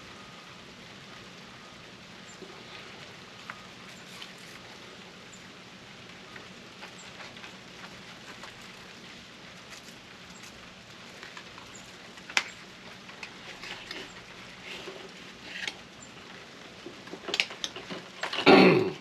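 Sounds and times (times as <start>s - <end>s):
light rain pattering: 0.0s - 19.0s.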